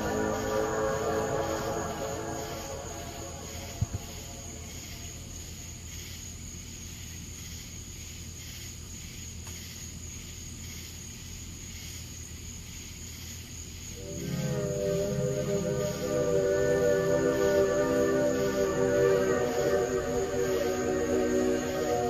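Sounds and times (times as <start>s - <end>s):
low hum: 0.0s - 4.8s, 14.0s - 22.0s
steady high whine: 0.0s - 5.2s, 14.0s - 22.0s
night insects chirping: 0.0s - 22.0s.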